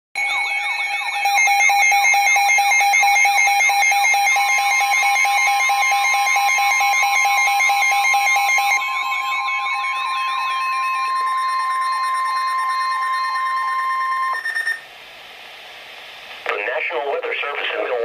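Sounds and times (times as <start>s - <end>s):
sweeping electronic chirps: 0.2s - 14.9s
fast pulsing beep: 3.2s - 14.8s.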